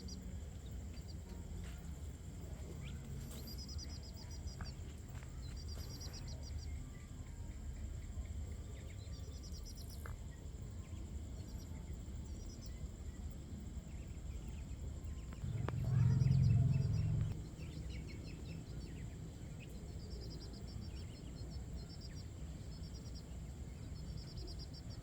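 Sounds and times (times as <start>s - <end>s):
rapid chirping trills: 2.2s - 25.0s
low rumble: 14.0s - 21.5s.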